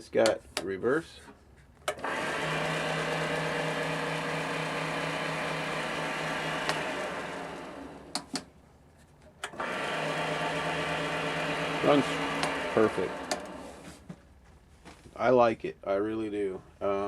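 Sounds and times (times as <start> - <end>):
metal lathe motor hum: 1.9 - 8.3, 9.4 - 14.0
switch clicks: 6.6 - 6.8.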